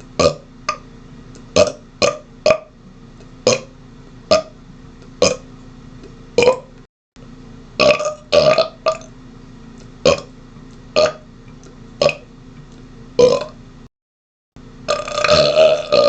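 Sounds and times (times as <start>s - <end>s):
man burping: 14.9s - 16.0s.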